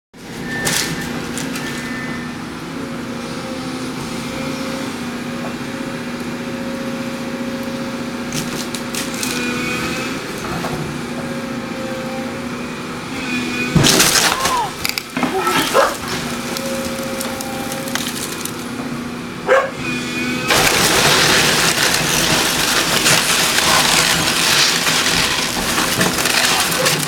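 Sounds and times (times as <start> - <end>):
heavy machine engine running: 0.2 - 27.0
wood cracking: 8.3 - 9.5, 13.8 - 18.8, 20.5 - 27.0.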